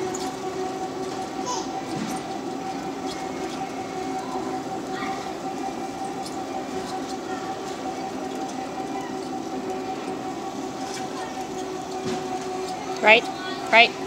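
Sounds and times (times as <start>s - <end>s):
cart rolling rumble: 0.0s - 14.0s
electric motor whine: 0.0s - 14.0s.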